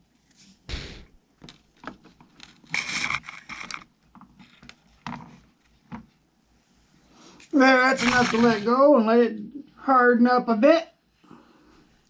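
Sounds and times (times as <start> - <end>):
scraping rustle: 2.0 - 5.8, 7.3 - 8.8.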